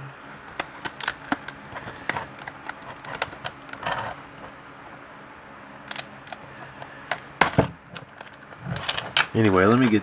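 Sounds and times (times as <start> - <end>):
plastic packaging clicks and crackles: 0.5 - 4.1, 5.9 - 6.4, 7.1 - 10.0.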